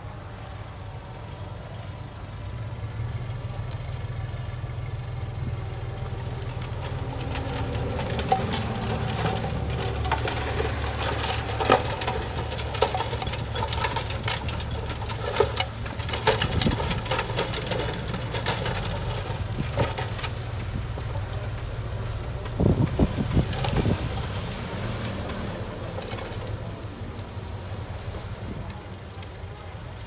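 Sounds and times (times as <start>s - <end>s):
heavy machinery diesel engine: 0.0s - 30.0s
metallic clanks and knocks: 6.3s - 21.6s.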